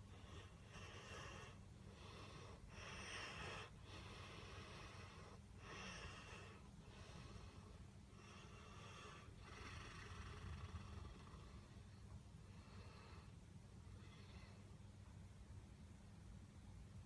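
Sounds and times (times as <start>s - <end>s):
dog snoring: 0.1s - 7.6s, 8.2s - 11.8s.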